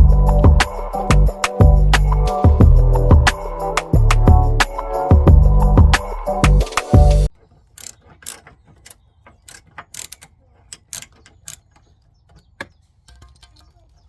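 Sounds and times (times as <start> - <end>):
hand ratchet clicking: 7.4 - 14.0.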